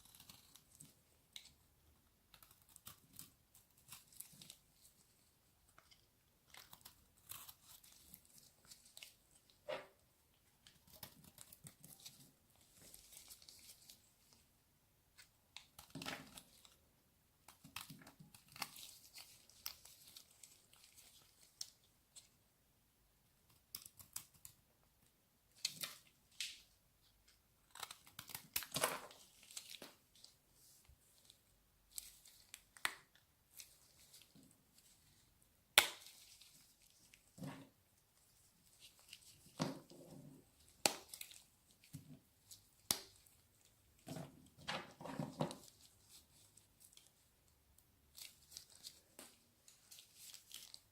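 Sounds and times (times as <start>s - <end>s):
crinkling and scraping: 25.6s - 35.3s, 36.0s - 47.3s.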